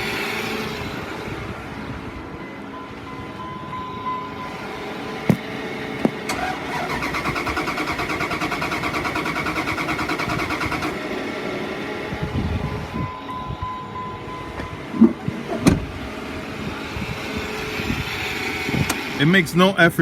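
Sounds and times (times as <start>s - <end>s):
engine cranking: 6.3s - 11.0s.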